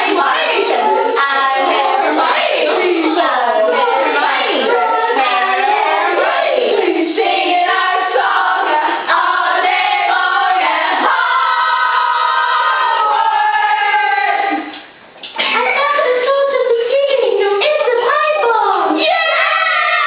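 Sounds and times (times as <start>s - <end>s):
children singing together: 0.0s - 14.7s.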